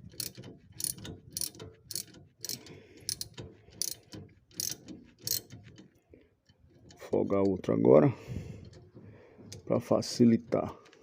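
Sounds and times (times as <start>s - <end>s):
ratchet wrench clicking: 0.0s - 5.9s.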